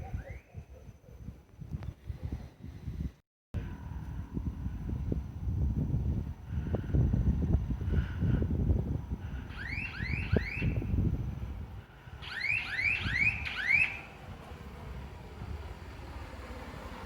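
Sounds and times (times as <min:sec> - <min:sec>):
low engine rumble: 0:03.6 - 0:17.0
electronic alarm chirping: 0:12.2 - 0:14.1.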